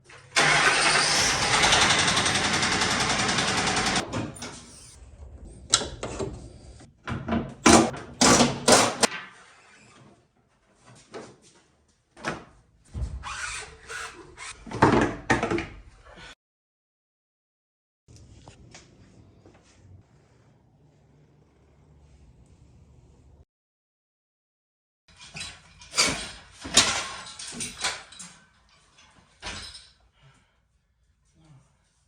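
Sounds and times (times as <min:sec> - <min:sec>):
engine running with rapid knock: 0:00.4 - 0:04.0.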